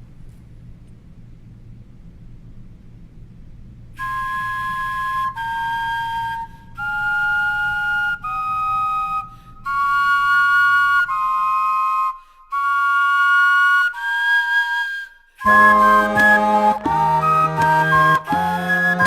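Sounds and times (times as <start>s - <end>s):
vegetable flutes playing slow melody: 4.0s - 19.0s.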